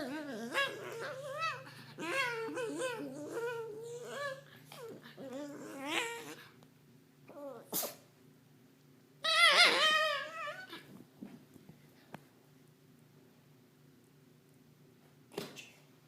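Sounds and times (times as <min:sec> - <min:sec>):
small dog whining: 0:00.0 - 0:06.5, 0:07.3 - 0:08.0, 0:09.2 - 0:10.9.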